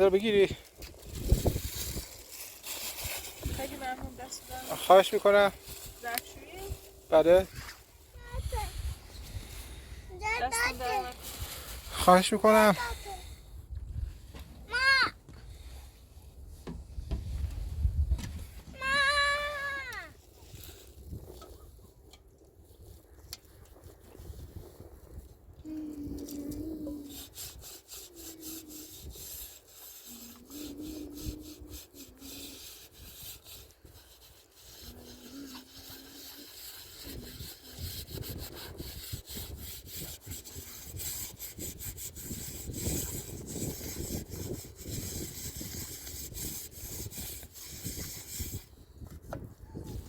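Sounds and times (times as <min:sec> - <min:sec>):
rasping strokes across a surface: 0:00.0 - 0:13.3, 0:23.8 - 0:49.0.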